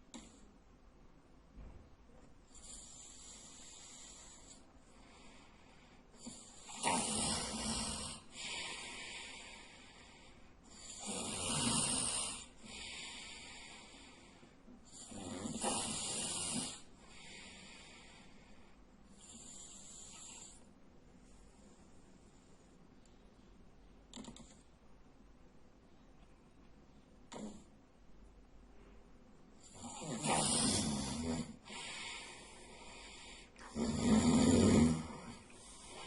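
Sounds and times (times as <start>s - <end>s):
soft hissing breath: 2.4s - 23.6s, 28.7s - 33.9s, 35.0s - 36.0s
man snoring: 6.2s - 9.7s, 10.7s - 13.5s, 14.9s - 17.7s, 29.6s - 36.0s.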